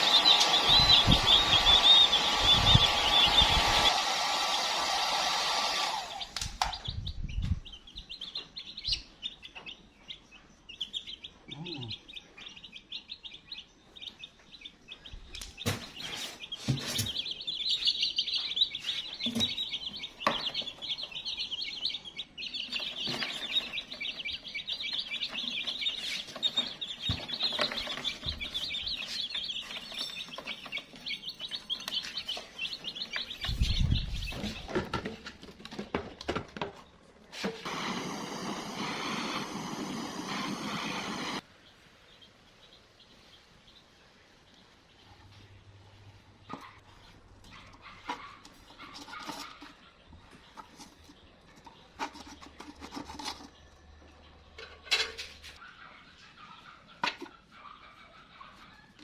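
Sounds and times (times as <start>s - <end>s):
chicks peeping: 0.0s - 4.6s, 5.8s - 59.0s.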